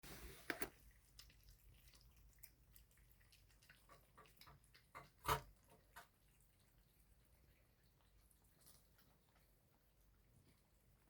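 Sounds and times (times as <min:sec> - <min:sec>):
cats chewing wetly: 0:00.3 - 0:11.0.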